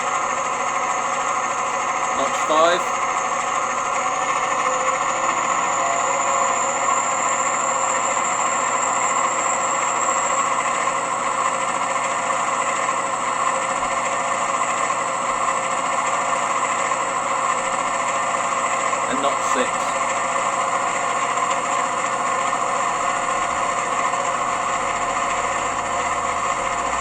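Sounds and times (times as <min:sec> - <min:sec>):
diesel locomotive engine from speaker: 0:00.0 - 0:27.0
thin high-pitched whine: 0:00.8 - 0:10.9.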